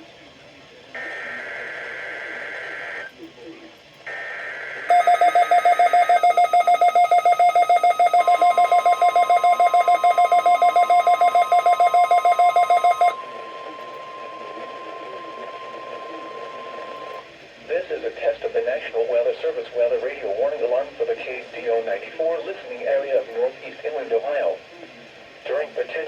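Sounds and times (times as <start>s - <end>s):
rapid loud beeping: 1.0s - 3.1s, 4.1s - 17.2s
steady warning alarm tone: 1.0s - 3.1s, 4.1s - 17.2s.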